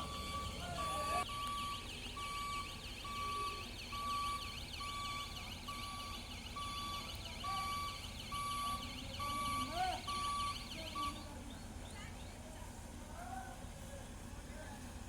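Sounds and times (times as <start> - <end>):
fast warbling siren: 0.0 - 11.2
warning alarm beeping: 0.0 - 11.3
low engine rumble: 0.0 - 15.0.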